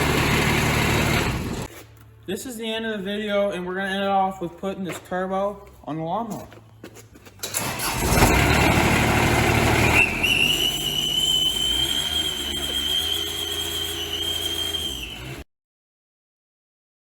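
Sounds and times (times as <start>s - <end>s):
lawnmower engine running: 0.0s - 1.7s, 7.4s - 15.4s
high exhaust whistle: 9.6s - 15.4s.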